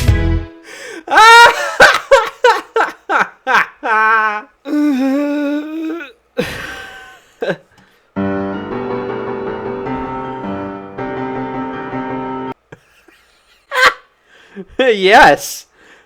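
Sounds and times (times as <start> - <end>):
electric piano chords: 8.2 - 12.6.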